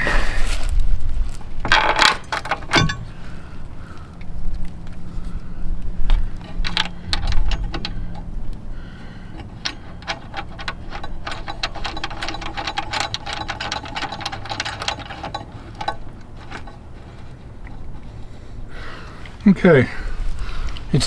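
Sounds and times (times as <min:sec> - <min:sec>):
socket ratchet clicking: 0:06.4 - 0:18.2.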